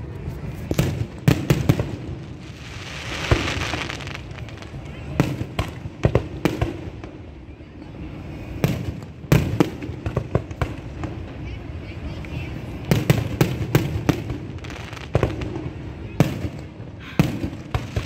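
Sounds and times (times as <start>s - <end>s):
fireworks bangs and crackles: 0.0s - 18.0s
firework hiss: 0.2s - 6.5s, 12.9s - 18.0s.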